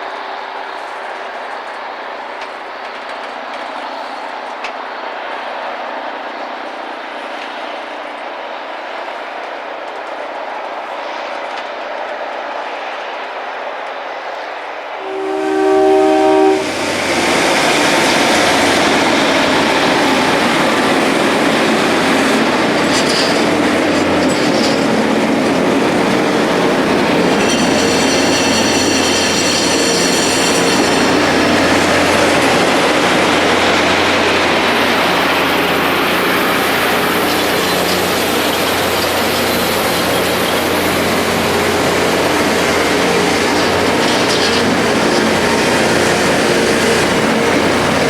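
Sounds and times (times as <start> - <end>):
rail grinding wheels rushing: 0.0 - 48.0
train horn chord: 15.0 - 48.0.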